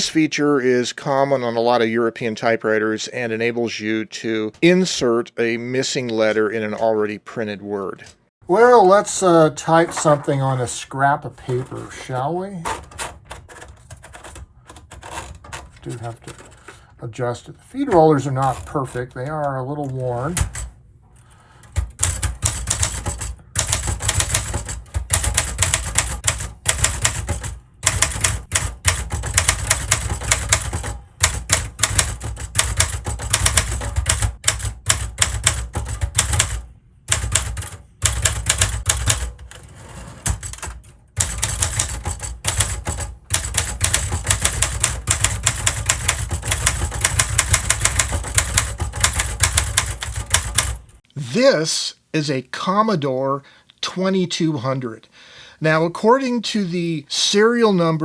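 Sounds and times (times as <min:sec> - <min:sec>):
typewriter keystroke clacks: 0:12.7 - 0:16.6, 0:21.6 - 0:39.4, 0:40.2 - 0:50.9.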